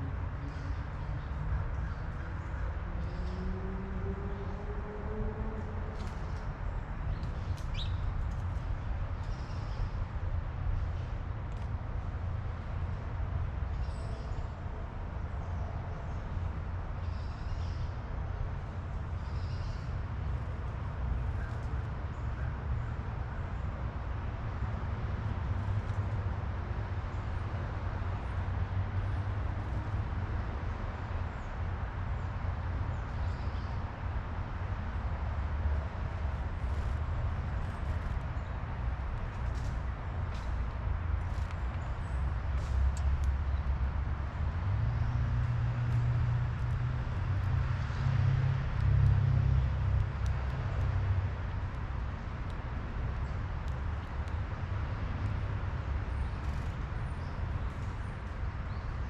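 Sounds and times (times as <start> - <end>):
vehicle engine rumble passing: 41.5 - 52.4.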